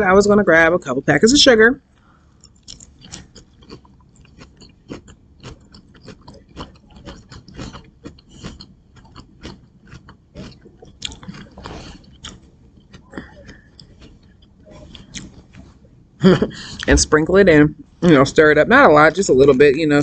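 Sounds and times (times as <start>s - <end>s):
person chewing fruit: 2.4s - 17.0s.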